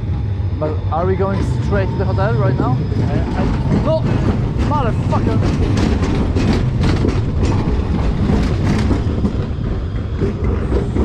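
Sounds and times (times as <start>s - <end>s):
tram rumbling: 0.0s - 11.0s
wheel clacks over rails: 2.5s - 11.0s.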